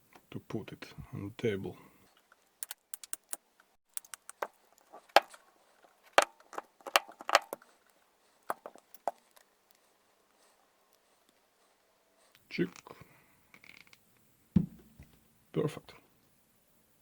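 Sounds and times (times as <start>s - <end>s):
plastic clicking and cracking: 2.2s - 7.8s.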